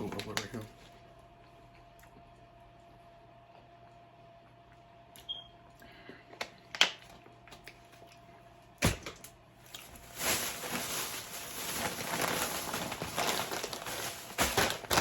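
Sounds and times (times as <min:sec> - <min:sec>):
plastic chip bag crinkling: 0:00.0 - 0:00.8, 0:09.0 - 0:15.0.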